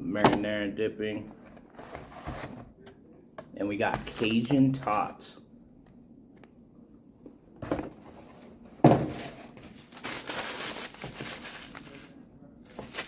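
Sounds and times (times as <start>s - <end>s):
wrapper crinkling: 9.8s - 13.0s.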